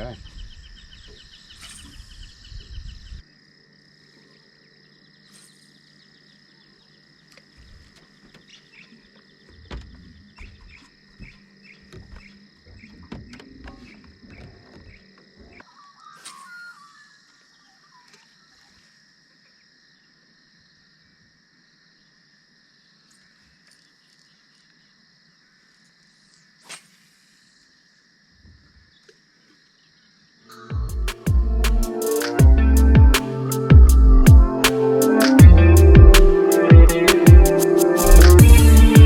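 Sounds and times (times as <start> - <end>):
insects chirring: 0.0 - 39.0
low rumble: 30.8 - 34.5, 35.4 - 36.4.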